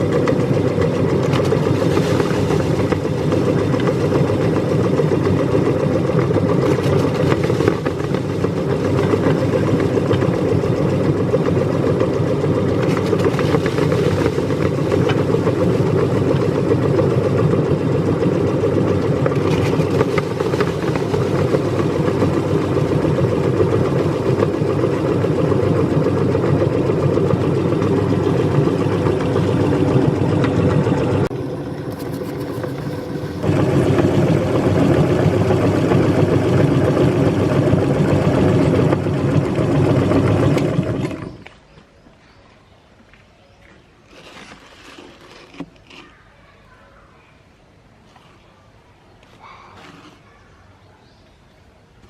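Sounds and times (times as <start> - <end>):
electric meat grinder motor: 0.0 - 41.5.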